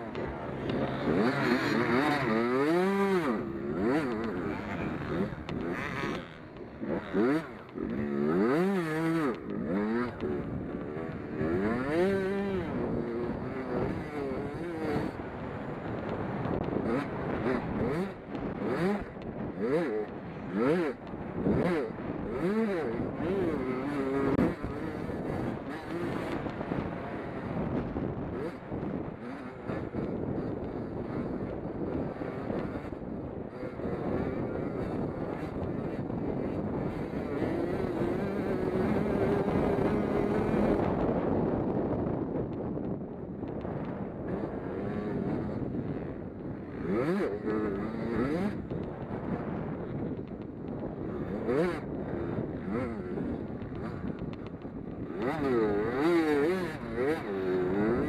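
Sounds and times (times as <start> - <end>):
race car engines revving: 0.0 - 58.0
wind buffeting microphone: 0.0 - 58.0.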